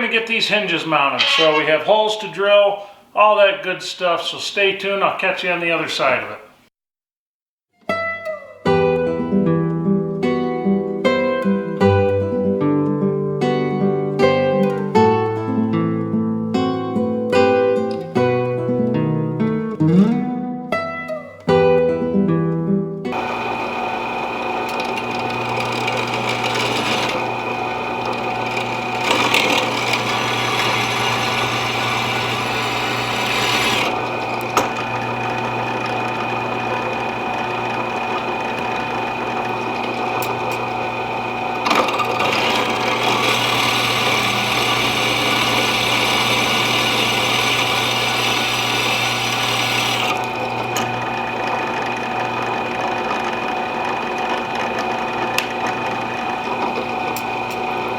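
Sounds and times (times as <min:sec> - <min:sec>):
drill bit boring holes: 0:01.0 - 0:02.0, 0:23.2 - 0:57.9
electric drill running: 0:23.1 - 0:57.9.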